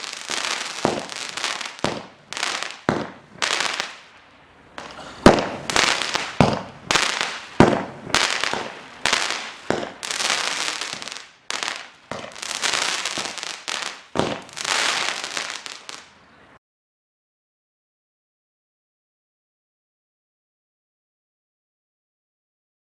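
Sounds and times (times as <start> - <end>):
firework reports: 0.0 - 4.1, 4.8 - 16.4.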